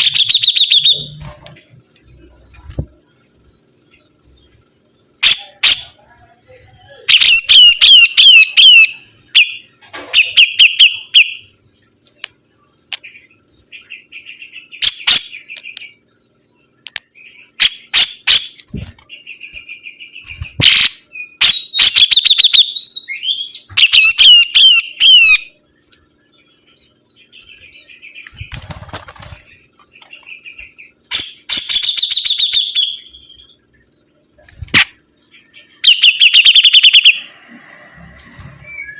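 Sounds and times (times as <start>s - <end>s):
songbird chirping: 0.0s - 38.9s.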